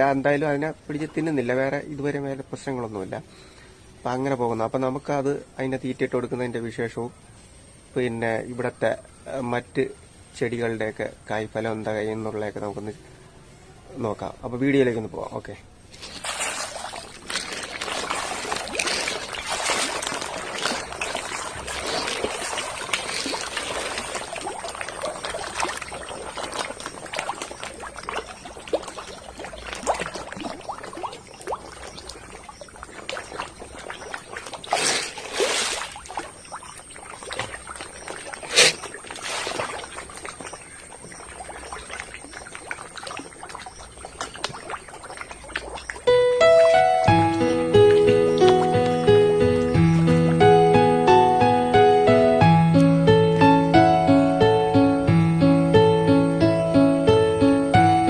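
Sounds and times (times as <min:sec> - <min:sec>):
pond water splashing: 0:00.0 - 0:02.1, 0:15.8 - 0:58.0.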